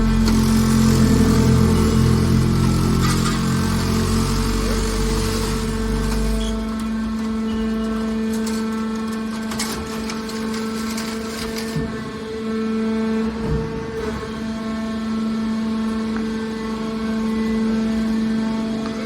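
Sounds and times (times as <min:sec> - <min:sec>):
deep rumble: 0:00.0 - 0:03.2
baling press machine hum: 0:00.0 - 0:19.0.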